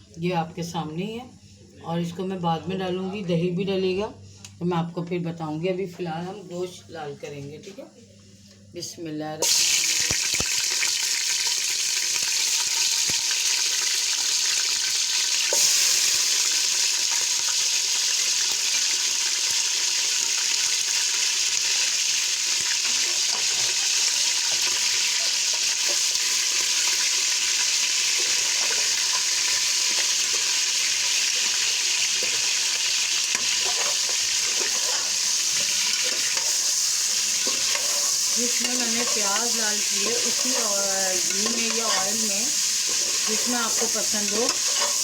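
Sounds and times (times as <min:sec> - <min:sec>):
meat sizzling in hot oil: 0:09.4 - 0:45.0.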